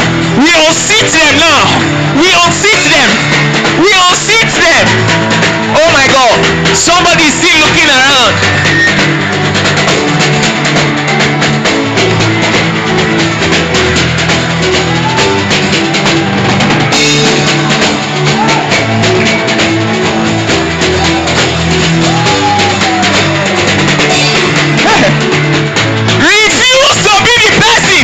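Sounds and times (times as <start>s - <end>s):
bass notes: 0.0s - 28.0s
drum kit beat: 0.0s - 28.0s
guitar: 0.0s - 28.0s.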